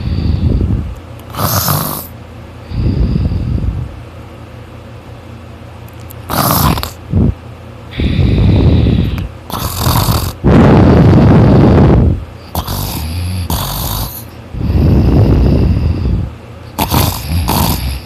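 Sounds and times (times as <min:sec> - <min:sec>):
hissing breaths: 0:00.0 - 0:03.8, 0:07.9 - 0:18.0
man snoring loudly: 0:01.3 - 0:03.0, 0:06.3 - 0:07.0, 0:08.0 - 0:16.2, 0:16.8 - 0:18.0.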